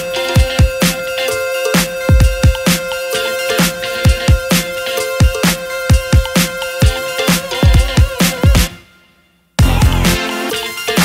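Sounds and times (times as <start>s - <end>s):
electronic dance music: 0.0s - 8.8s, 9.6s - 11.0s.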